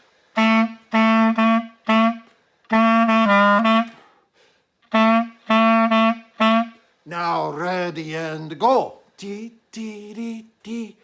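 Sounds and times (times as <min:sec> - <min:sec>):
clarinet playing short notes: 0:00.3 - 0:04.2, 0:04.8 - 0:06.9.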